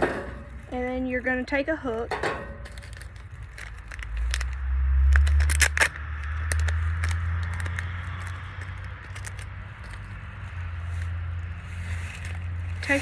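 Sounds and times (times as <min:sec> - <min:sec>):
fishing tackle clicks and scrapes: 0:00.0 - 0:13.0
low rumble: 0:02.0 - 0:12.8.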